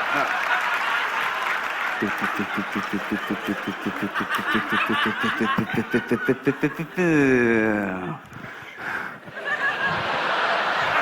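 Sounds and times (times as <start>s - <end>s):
man giggling: 2.0s - 8.2s.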